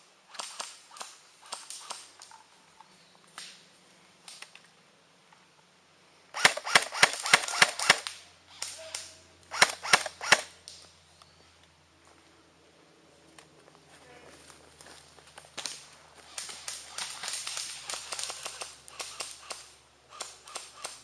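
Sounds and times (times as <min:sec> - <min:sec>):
airsoft gun shots snapping: 0:06.4 - 0:08.2.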